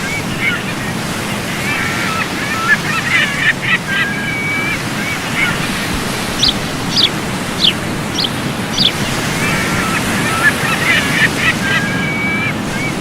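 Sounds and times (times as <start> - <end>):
surf: 0.0 - 13.0
wind: 0.0 - 13.0.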